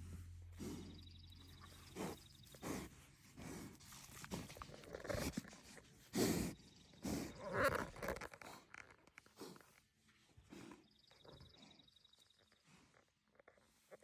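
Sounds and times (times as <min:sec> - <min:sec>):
farm animals calling: 0:00.0 - 0:08.6.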